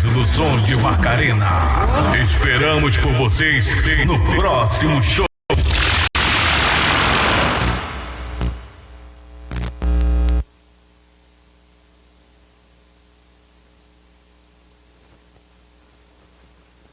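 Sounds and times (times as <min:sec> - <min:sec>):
faint steady hiss and hum: 0:07.9 - 0:16.9.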